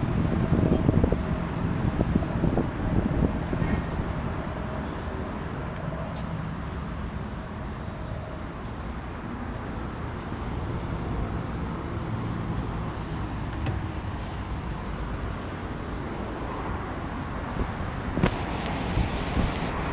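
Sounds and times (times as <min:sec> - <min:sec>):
vehicle engine rumbling: 0:00.0 - 0:19.9.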